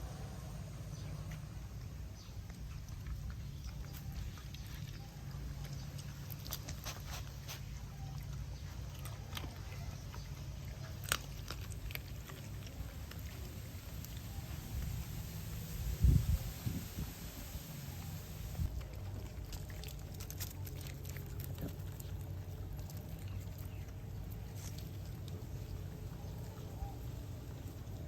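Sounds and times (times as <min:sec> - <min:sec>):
low rumble: 0:00.0 - 0:03.8, 0:12.8 - 0:19.6
dog chewing: 0:01.0 - 0:15.5, 0:17.9 - 0:28.0.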